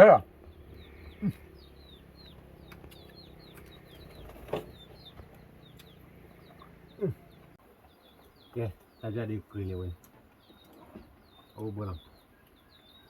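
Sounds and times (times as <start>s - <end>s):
small birds chirping: 0.0s - 13.0s
brief low bird calls: 0.6s - 4.9s, 5.6s - 7.5s.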